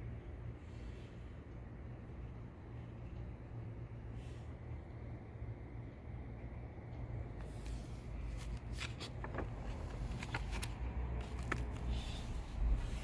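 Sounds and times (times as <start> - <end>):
steady low hum: 0.0 - 13.0
paper pages rustling: 7.4 - 13.0.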